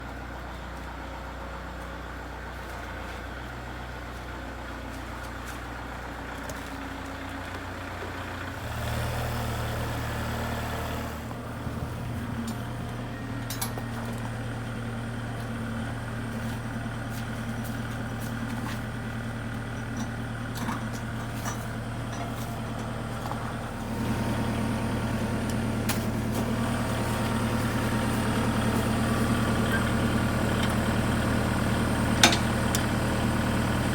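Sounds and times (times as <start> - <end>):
tractor engine running: 0.0 - 33.9.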